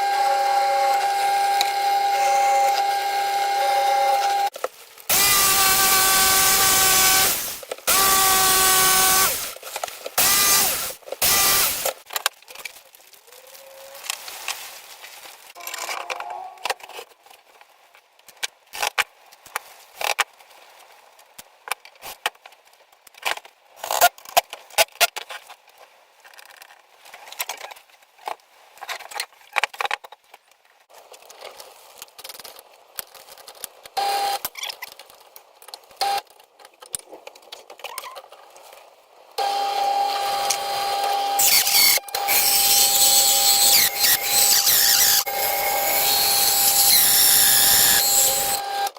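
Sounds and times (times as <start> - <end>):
power tool whining: 0.0 - 4.5, 5.1 - 9.6, 10.2 - 12.0, 39.4 - 48.9.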